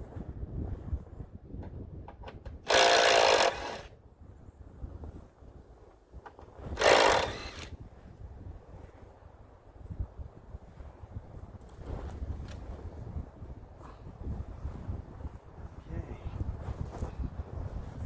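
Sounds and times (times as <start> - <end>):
impact wrench hammering: 2.1 - 3.9, 6.3 - 7.7.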